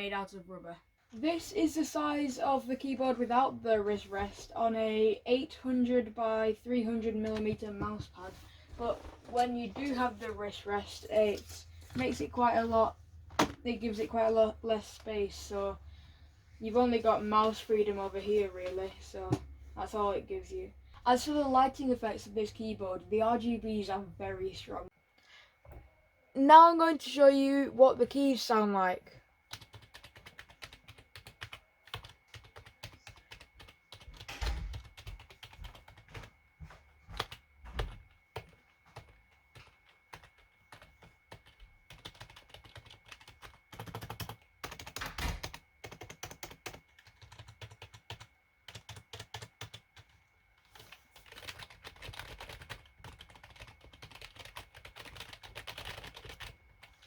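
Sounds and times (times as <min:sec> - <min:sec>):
keyboard typing: 0:29.5 - 0:36.4, 0:37.1 - 0:57.0.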